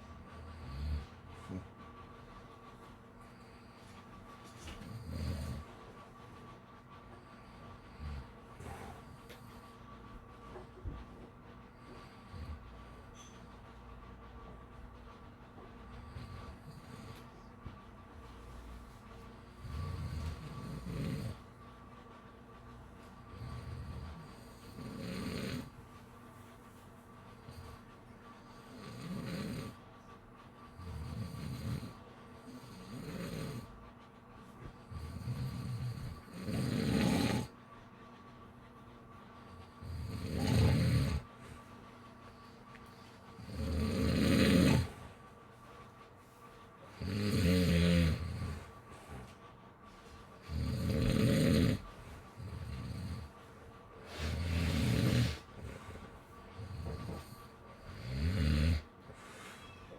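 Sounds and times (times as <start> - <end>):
loud rattling snores: 19.6 - 21.4, 23.4 - 25.7, 28.8 - 29.8, 30.8 - 33.7, 35.0 - 37.5, 39.8 - 41.2, 43.4 - 45.0, 47.0 - 48.6, 50.4 - 51.8, 52.4 - 53.3, 54.3 - 55.5, 56.6 - 58.9.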